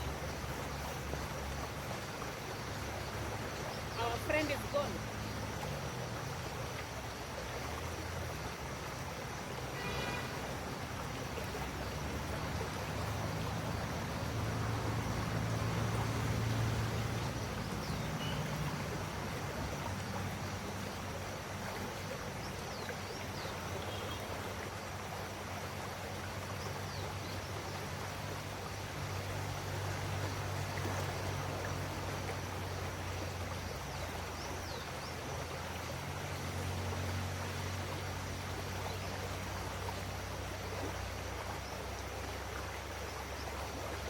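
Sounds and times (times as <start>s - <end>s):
river water flowing: 0.0s - 44.0s
faint bird chirps: 17.8s - 18.5s.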